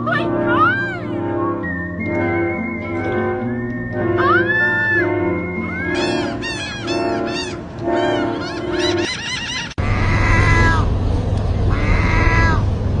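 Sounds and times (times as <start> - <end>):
quick chirping calls: 5.6 - 9.8
cat meowing: 11.7 - 12.6.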